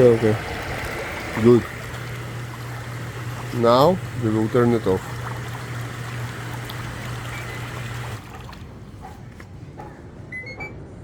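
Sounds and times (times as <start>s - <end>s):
water trickling: 0.0s - 8.8s
jet pump humming: 0.0s - 9.0s
water rushing and churning: 0.0s - 9.1s.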